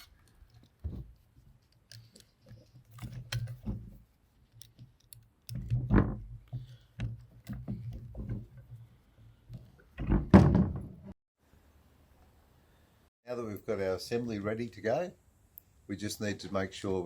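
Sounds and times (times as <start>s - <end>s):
heavy thump: 10.0s - 11.0s.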